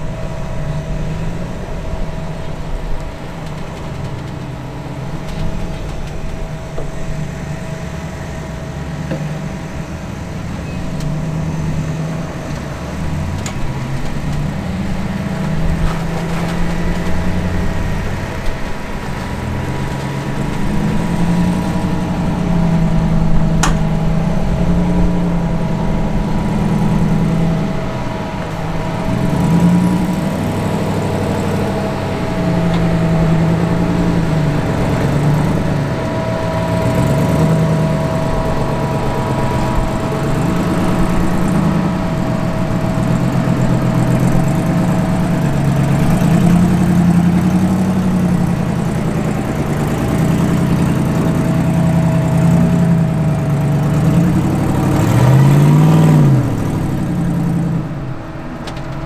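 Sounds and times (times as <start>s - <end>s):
off-road vehicle engine revving: 0.0s - 59.0s
steady thin whine: 0.0s - 59.0s
sharp click: 23.6s - 23.9s.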